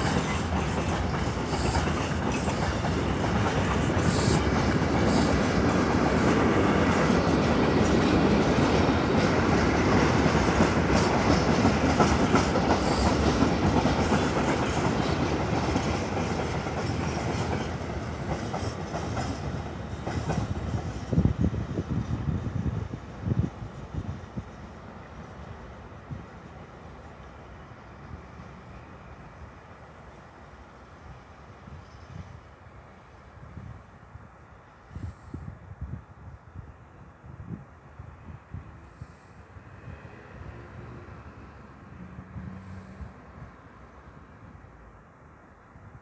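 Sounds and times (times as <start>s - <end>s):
freight train wheels clattering: 0.0s - 21.3s.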